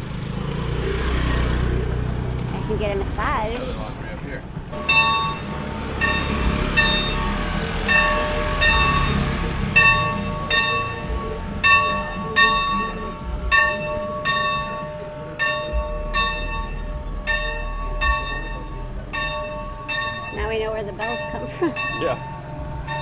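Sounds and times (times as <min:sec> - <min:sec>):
bells ringing: 0:04.7 - 0:23.0.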